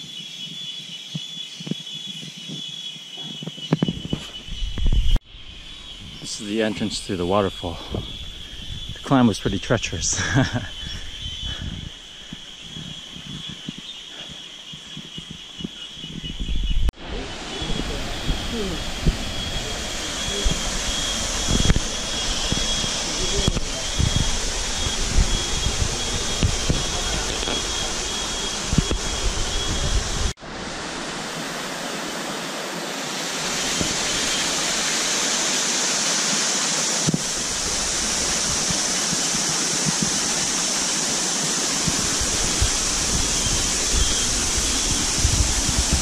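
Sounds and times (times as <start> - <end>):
wind buffeting microphone: 7.4 - 13.9, 14.9 - 30.4, 41.8 - 46.0
waterfall rushing: 17.0 - 46.0.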